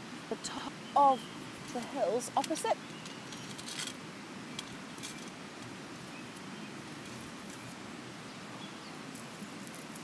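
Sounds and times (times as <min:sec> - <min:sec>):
faint bird chirps: 0:00.3 - 0:03.7, 0:07.5 - 0:09.1.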